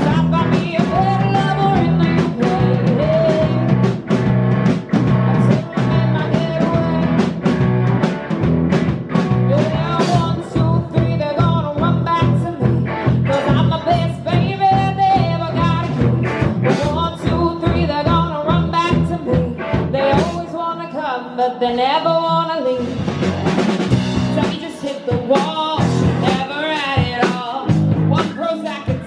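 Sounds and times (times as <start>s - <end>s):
drum beat: 0.0s - 12.4s, 22.9s - 29.0s
bass guitar: 0.0s - 20.9s, 21.7s - 29.0s
electric guitar: 0.0s - 29.0s.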